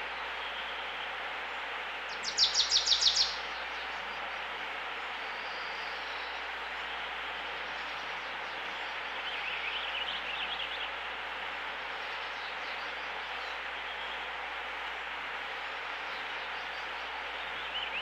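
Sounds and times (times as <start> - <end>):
faint bird chirps: 2.2 - 3.4.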